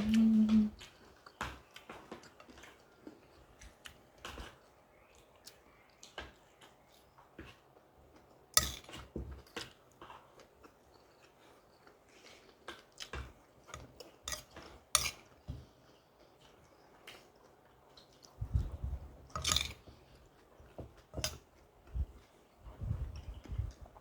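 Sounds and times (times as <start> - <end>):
chewing and mouth sounds: 0.0 - 8.4
cutlery scraping a plate: 8.6 - 9.1, 13.7 - 15.3, 19.3 - 19.9.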